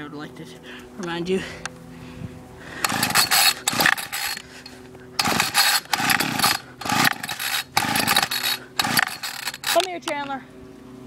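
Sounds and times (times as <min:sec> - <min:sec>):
string trimmer recoil starter pulls: 0:02.8 - 0:10.3.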